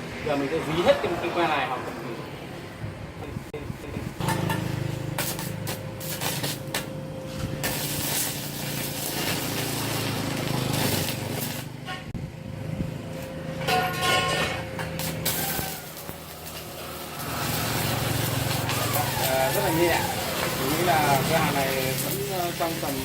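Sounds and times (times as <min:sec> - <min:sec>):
welder low hum: 0:03.9 - 0:13.7, 0:14.6 - 0:23.0
welding arc crackling and sizzling: 0:04.1 - 0:23.0.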